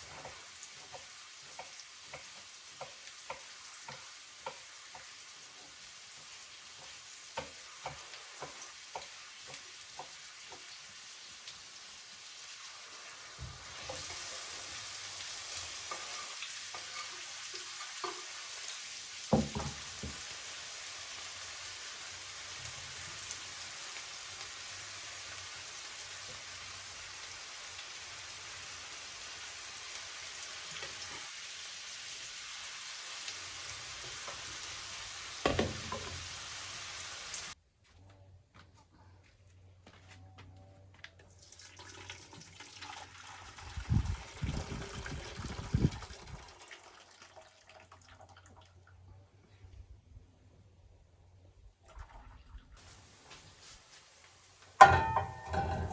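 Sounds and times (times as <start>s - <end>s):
utensil stirring and tapping pan: 0.0s - 10.8s, 15.8s - 18.4s, 54.8s - 55.9s
food sizzling in a pan: 0.0s - 37.6s, 52.8s - 55.9s.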